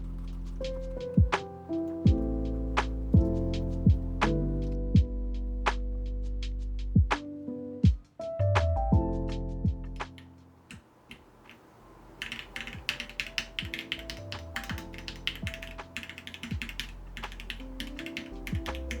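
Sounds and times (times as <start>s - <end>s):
background music: 0.0s - 10.5s, 12.6s - 19.0s
mechanical keyboard typing: 12.2s - 19.0s.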